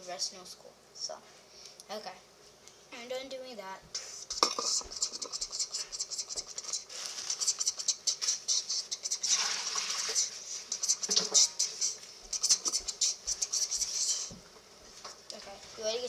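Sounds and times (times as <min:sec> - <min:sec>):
butter sizzling in a frying pan: 0:09.2 - 0:10.3.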